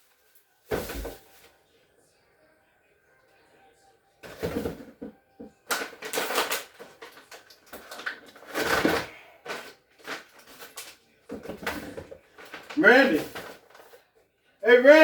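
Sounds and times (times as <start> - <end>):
food rustling and clattering: 4.2 - 14.2.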